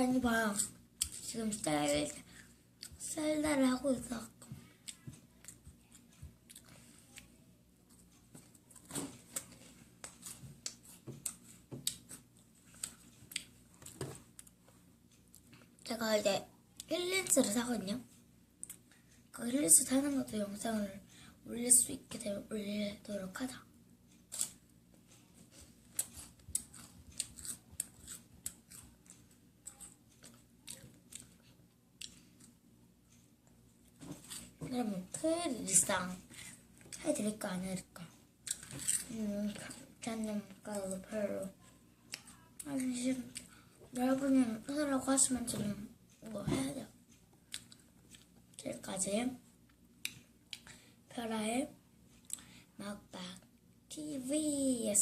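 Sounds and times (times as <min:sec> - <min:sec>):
wafer biscuits being chewed: 0:25.4 - 0:34.6, 0:38.4 - 0:39.8, 0:47.1 - 0:48.6
wafer cookies crunching: 0:38.4 - 0:39.2.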